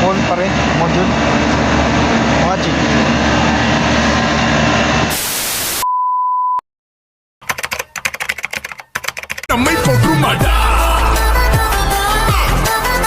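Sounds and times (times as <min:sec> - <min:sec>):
machine running: 0:00.0 - 0:05.2
static hiss burst: 0:05.1 - 0:05.8
music: 0:09.5 - 0:13.0.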